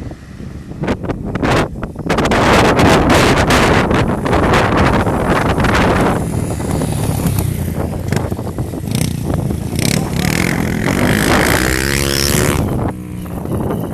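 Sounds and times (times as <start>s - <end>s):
motorcycle engine running: 2.8s - 13.9s.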